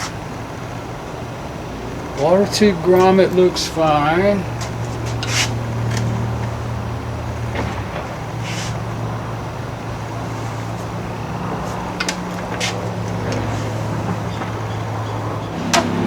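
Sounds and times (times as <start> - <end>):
low mechanical hum: 0.0 - 16.0
clicks and knocks of tools: 4.6 - 6.5, 11.7 - 14.5.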